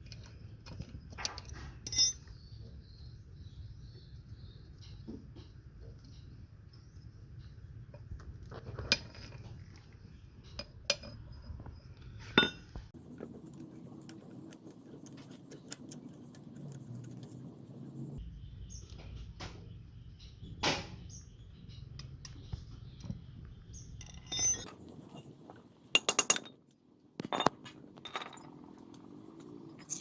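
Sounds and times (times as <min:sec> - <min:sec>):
steel vise parts clinking: 0:00.1 - 0:02.4, 0:10.4 - 0:12.8, 0:24.0 - 0:24.7.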